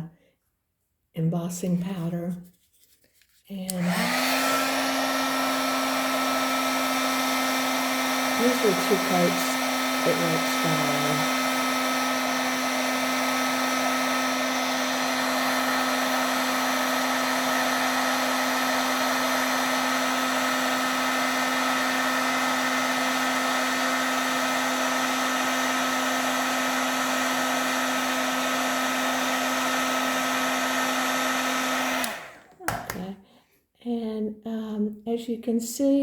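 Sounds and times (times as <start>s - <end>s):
heat tool fan blowing: 3.7s - 32.5s.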